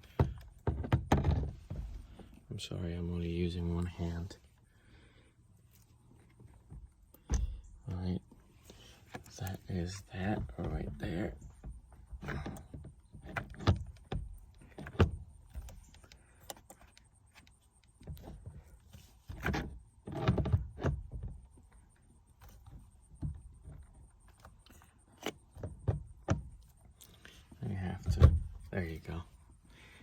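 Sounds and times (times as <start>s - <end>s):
steering wheel knocking and rubbing: 0.0s - 2.5s, 5.7s - 29.6s
loud thumps: 7.2s - 7.8s.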